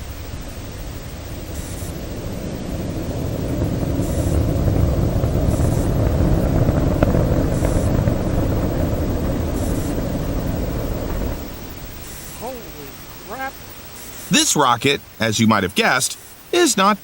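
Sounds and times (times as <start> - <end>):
rocket launch rumble: 0.0 - 15.9
faint crack: 1.9 - 12.5.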